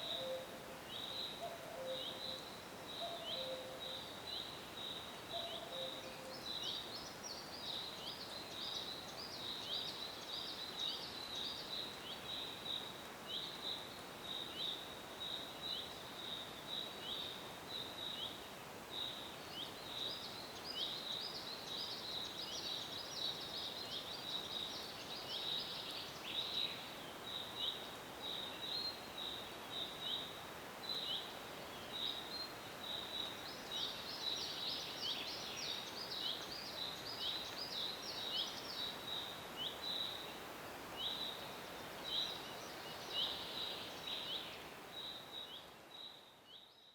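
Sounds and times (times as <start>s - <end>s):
cuckoo calling: 0.0s - 0.5s
small birds chirping: 0.0s - 46.9s
soft steady hiss: 0.0s - 46.9s.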